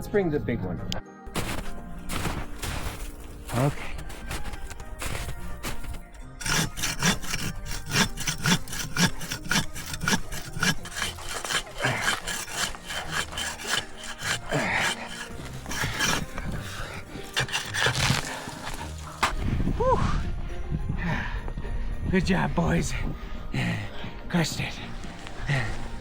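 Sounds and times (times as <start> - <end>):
hand saw cutting wood: 4.2 - 19.4.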